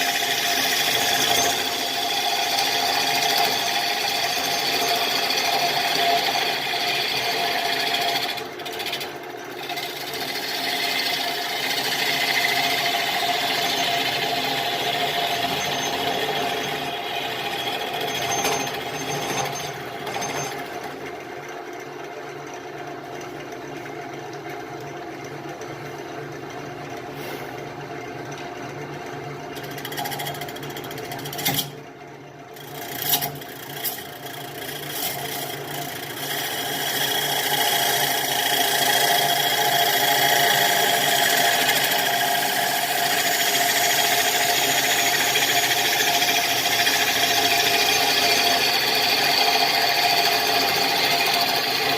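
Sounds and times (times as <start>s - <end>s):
tool scraping spinning wood: 0.0s - 21.2s, 29.4s - 31.8s, 32.6s - 51.9s
lathe motor hum: 0.0s - 21.6s, 32.6s - 51.9s.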